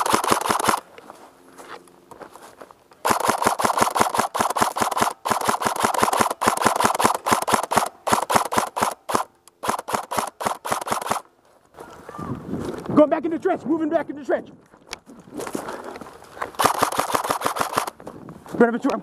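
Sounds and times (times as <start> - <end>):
airsoft rifle firing bursts: 0.0 - 0.8, 3.0 - 11.3, 16.6 - 18.0.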